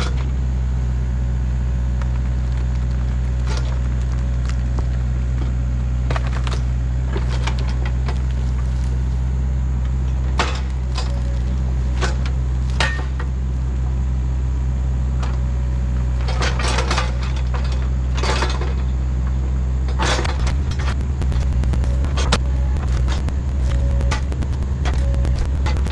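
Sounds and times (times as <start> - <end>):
diesel engine running: 20.2 - 25.9.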